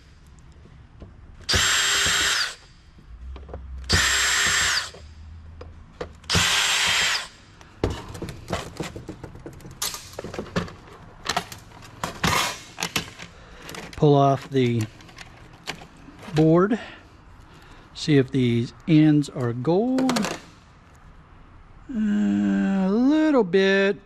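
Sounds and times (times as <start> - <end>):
power drill-driver whirring: 1.4 - 2.7, 3.8 - 5.1, 6.2 - 7.4.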